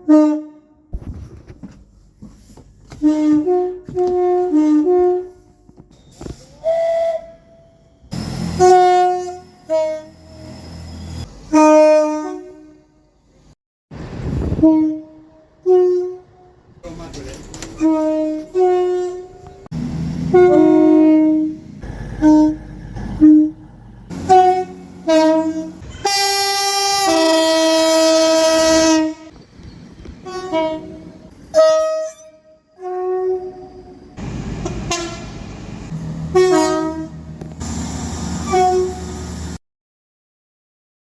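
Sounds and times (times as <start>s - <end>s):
train horn blasts: 0.0s - 0.9s, 2.9s - 5.8s, 6.6s - 13.2s, 14.3s - 16.7s, 17.8s - 29.4s, 30.1s - 35.4s, 36.3s - 37.5s, 38.4s - 39.6s
moving trains rumbling: 0.0s - 39.6s.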